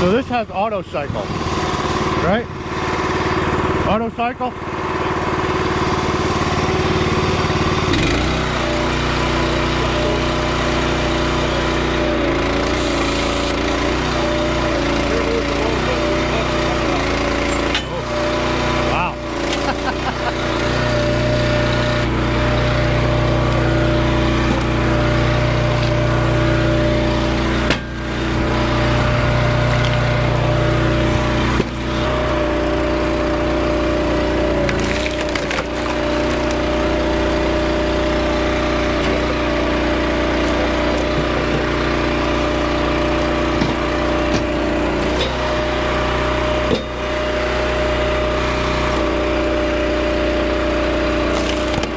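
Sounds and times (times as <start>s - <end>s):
log splitter engine running: 0.0s - 51.9s
wood splitting cracks: 22.8s - 28.8s, 33.9s - 37.4s, 38.6s - 45.7s, 51.1s - 51.9s.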